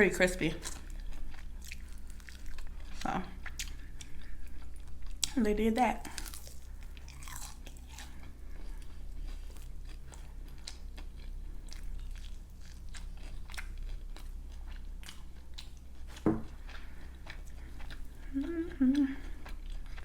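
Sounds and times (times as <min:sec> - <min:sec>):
chewing crispy food: 0:00.0 - 0:20.0
loud thump: 0:16.2 - 0:16.5.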